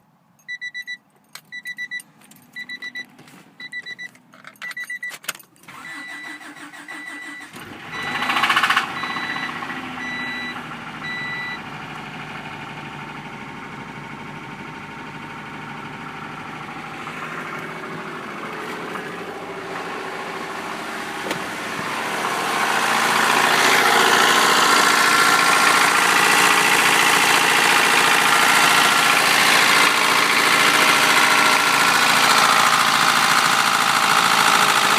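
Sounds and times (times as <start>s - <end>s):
car warning chime beeping: 0.4s - 11.7s
car engine cranking and running: 0.6s - 34.9s.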